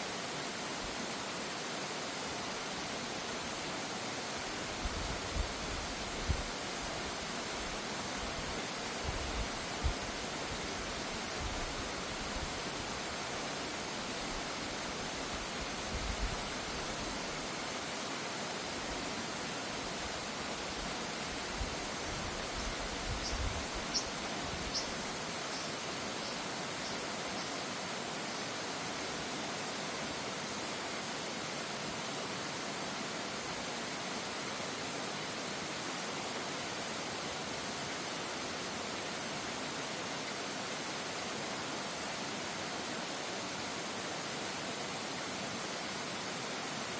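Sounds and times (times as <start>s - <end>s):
stream rushing over rocks: 0.0s - 46.9s
bird chirping: 23.1s - 27.6s.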